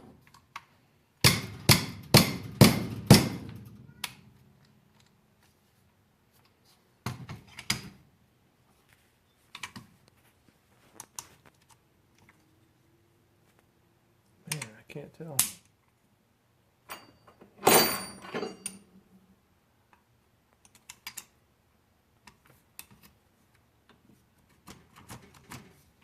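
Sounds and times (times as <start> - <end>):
hammer striking a punch: 1.2 - 3.5.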